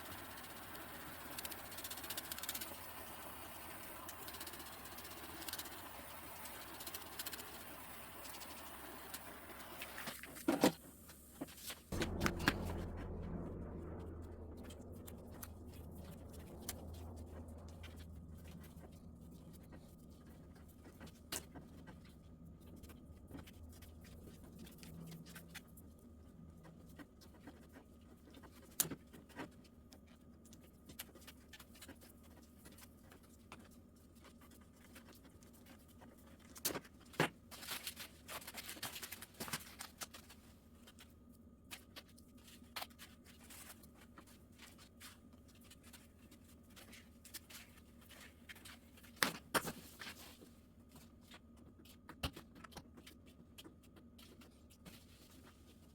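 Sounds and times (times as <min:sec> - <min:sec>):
faint low hum: 0:00.0 - 0:28.6.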